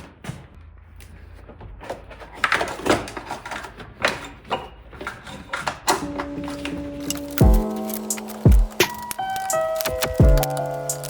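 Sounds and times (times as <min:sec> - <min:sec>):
tools and parts clinking: 0:01.9 - 0:11.0
held music tone: 0:06.0 - 0:11.0.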